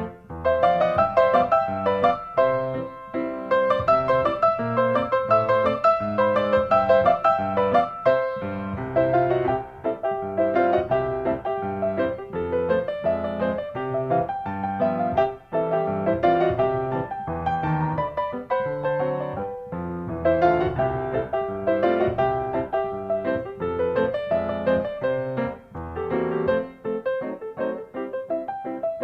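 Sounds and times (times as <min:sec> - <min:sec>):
background piano music: 0:00.0 - 0:29.0.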